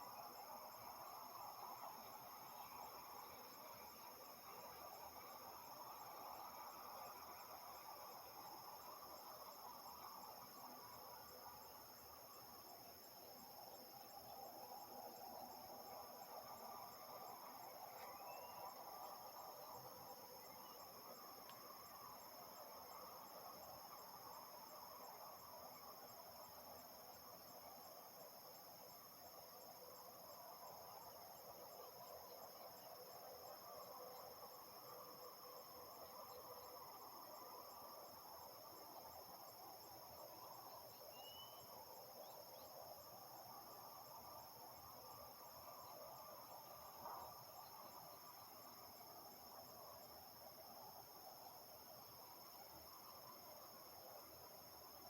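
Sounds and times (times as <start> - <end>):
crickets and insects chorus: 0.0 - 55.0.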